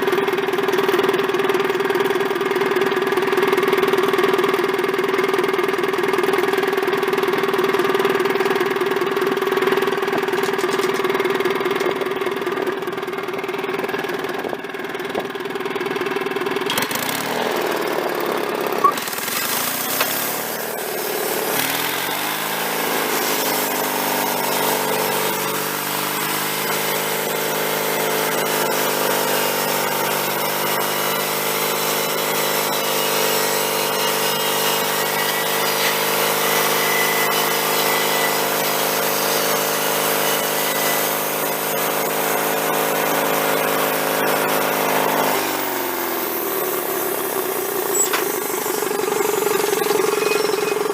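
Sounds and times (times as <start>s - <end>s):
sawmill engine running: 0.0s - 50.9s.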